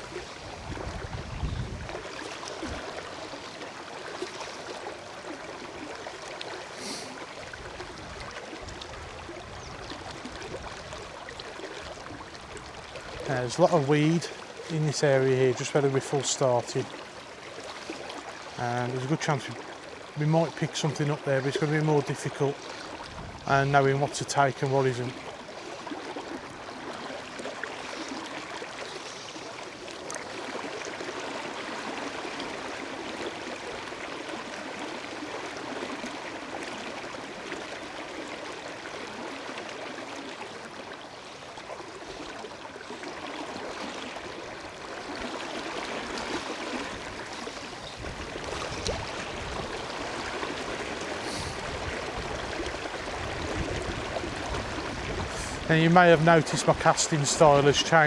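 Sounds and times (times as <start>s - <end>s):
wind buffeting microphone: 0.0s - 2.8s, 23.0s - 23.5s, 46.9s - 50.1s, 51.6s - 55.7s
river water rushing: 0.0s - 58.0s.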